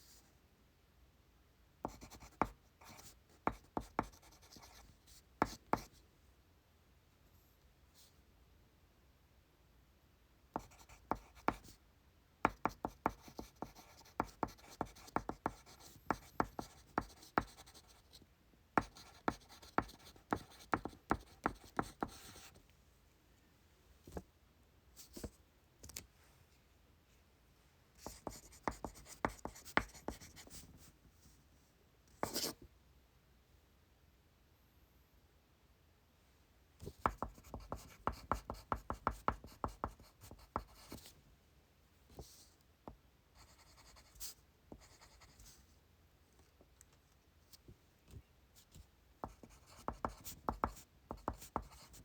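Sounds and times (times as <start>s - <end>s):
pencil writing on paper: 1.8s - 5.9s, 10.6s - 11.8s, 12.5s - 18.2s, 18.8s - 22.6s, 28.0s - 30.6s, 32.2s - 32.5s, 37.0s - 41.1s, 43.4s - 45.5s, 49.2s - 52.0s.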